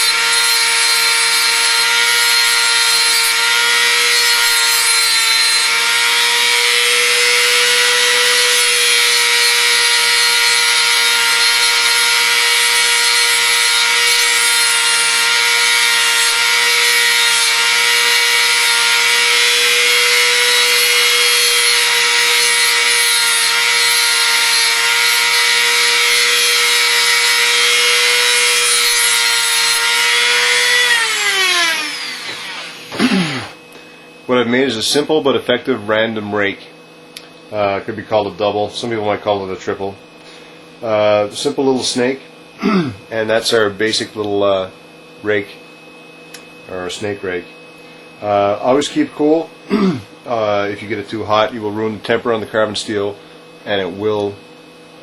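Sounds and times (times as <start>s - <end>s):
cutoff wheel grinding metal: 0.0s - 33.6s
rotary tool whine: 0.0s - 35.1s
motor spinning down: 23.6s - 33.6s.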